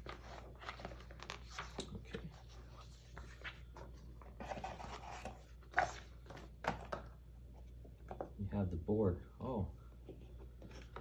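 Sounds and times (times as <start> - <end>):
cardboard rustling and rubbing: 0.0 - 6.5.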